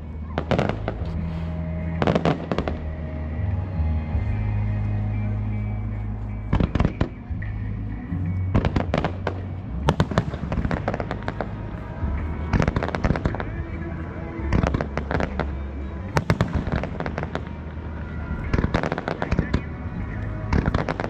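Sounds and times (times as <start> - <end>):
music with low notes: 0.0 - 21.0
fireworks bursting with bangs: 0.3 - 3.0, 6.5 - 7.3, 8.5 - 21.0.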